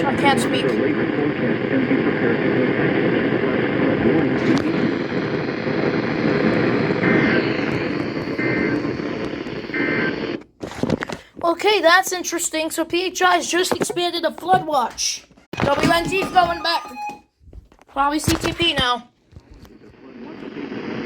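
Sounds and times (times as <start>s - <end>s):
radio static hiss: 0.0s - 11.1s, 18.2s - 21.0s
two-tone data bursts: 6.6s - 10.2s.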